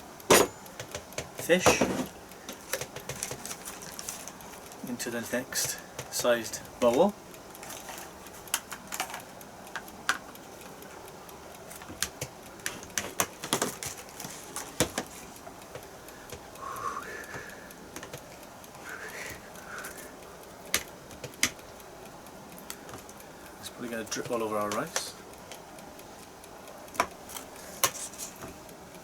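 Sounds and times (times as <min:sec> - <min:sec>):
plastic steamer baskets clacking: 0:00.3 - 0:04.4, 0:05.0 - 0:09.2, 0:11.8 - 0:15.2.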